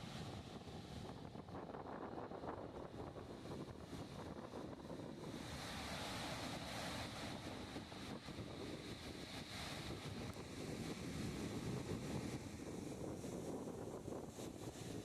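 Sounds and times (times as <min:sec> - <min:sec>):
wind buffeting microphone: 0:00.0 - 0:15.0.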